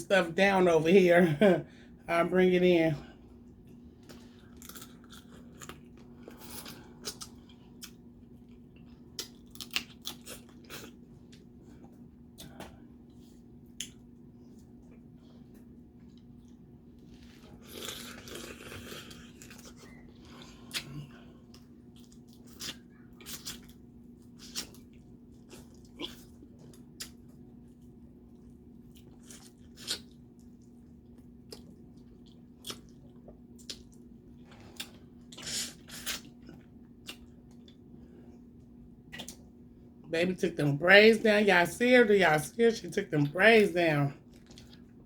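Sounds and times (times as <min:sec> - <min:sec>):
chewing: 0:03.6 - 0:37.9, 0:44.2 - 0:45.0.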